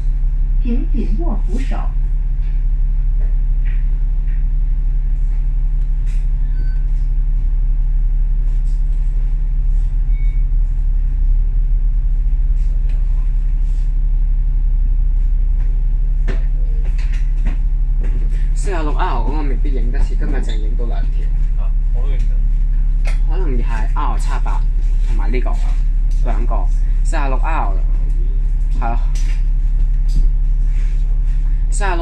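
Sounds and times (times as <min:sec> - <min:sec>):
bus engine and road drone: 0:00.0 - 0:32.0
bus body rattles and clicks: 0:02.3 - 0:07.0, 0:15.5 - 0:20.7.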